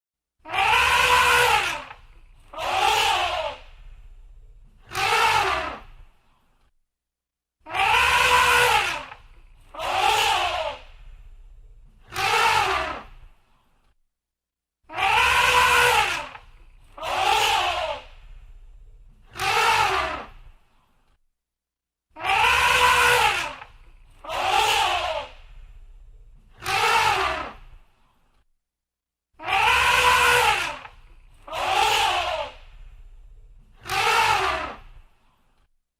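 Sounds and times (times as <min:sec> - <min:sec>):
elephant trumpeting: 0:00.5 - 0:03.6, 0:04.8 - 0:05.8, 0:07.8 - 0:10.8, 0:12.1 - 0:13.0, 0:14.9 - 0:18.0, 0:19.3 - 0:20.3, 0:22.2 - 0:25.7, 0:26.6 - 0:27.6, 0:29.4 - 0:32.9, 0:33.8 - 0:34.8.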